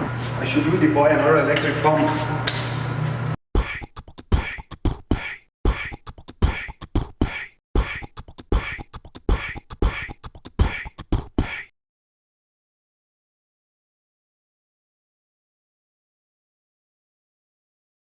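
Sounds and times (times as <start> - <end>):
beatbox kick thumps: 3.6 - 11.7
beatbox snare hits: 3.6 - 11.7.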